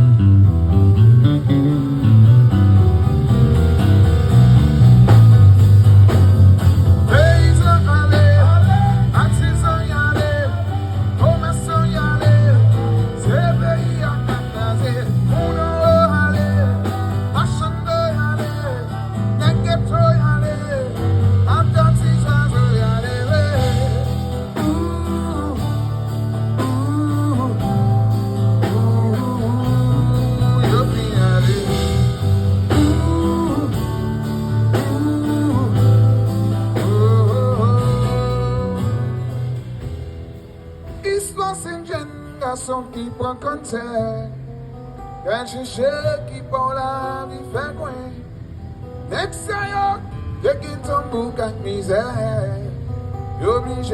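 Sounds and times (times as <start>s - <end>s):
heavy bass line: 0.0s - 41.9s
live band music: 0.0s - 43.8s
guitar: 0.0s - 53.9s.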